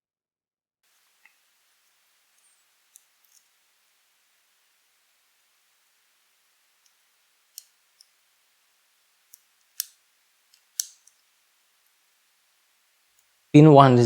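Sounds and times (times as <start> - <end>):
lock pick metallic clicks: 9.3 - 11.3.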